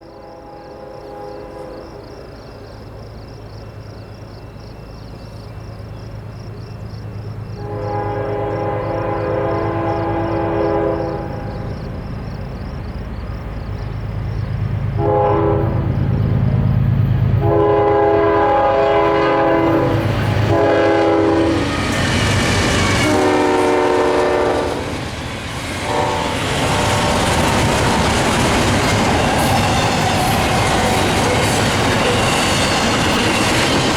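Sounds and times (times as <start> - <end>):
diesel locomotive engine rumble: 0.0 - 33.9
train wheels and rail noise: 0.0 - 33.9.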